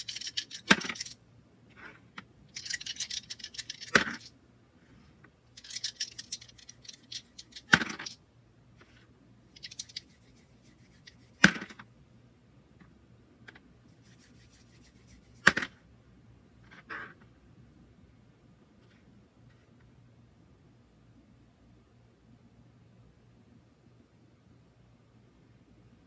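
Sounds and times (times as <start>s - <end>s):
dice clicking and rattling: 0.0s - 1.2s, 2.6s - 4.3s, 5.6s - 8.2s, 9.6s - 11.6s.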